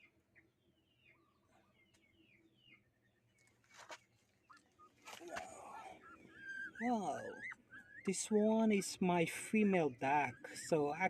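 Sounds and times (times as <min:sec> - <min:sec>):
faint bird chirps: 0:00.0 - 0:11.0
brief rustle: 0:03.4 - 0:04.1, 0:05.0 - 0:05.5.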